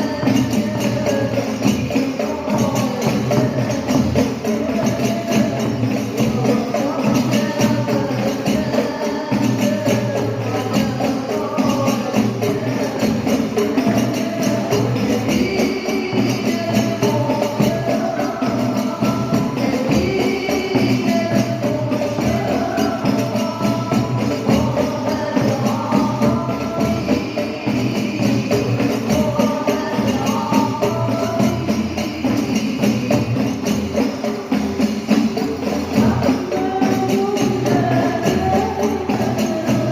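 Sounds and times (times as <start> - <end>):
frame drums with jingles: 0.0 - 39.9
women singing in unison: 0.0 - 39.9.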